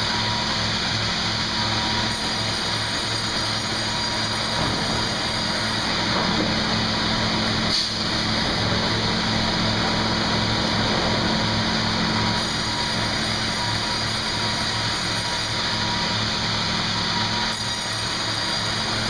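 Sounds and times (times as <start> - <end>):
sawmill machinery running: 0.0 - 19.0.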